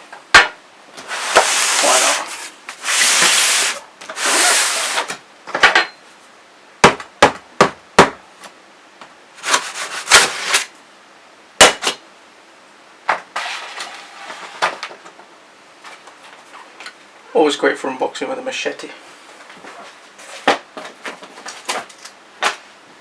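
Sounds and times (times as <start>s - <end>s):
machete scraping through tape: 1.1s - 5.2s, 9.4s - 10.7s, 13.4s - 14.7s.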